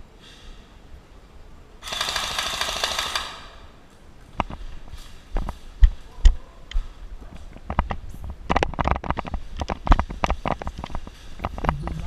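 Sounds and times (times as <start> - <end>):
airsoft rifle full-auto burst: 1.8 - 3.7.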